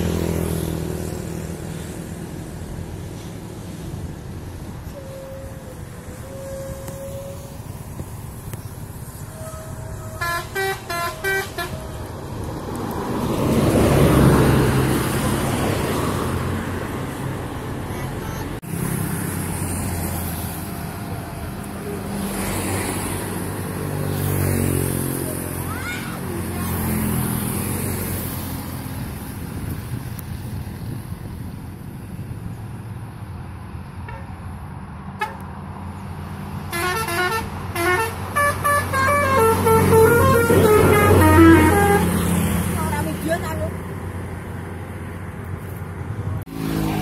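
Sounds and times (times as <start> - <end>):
heavy vehicle engine noise: 0.0 - 47.0
heavy vehicle passing: 0.0 - 47.0
multi-tone musical bus horn: 4.8 - 8.0, 8.6 - 12.5, 35.2 - 35.4, 36.7 - 43.1.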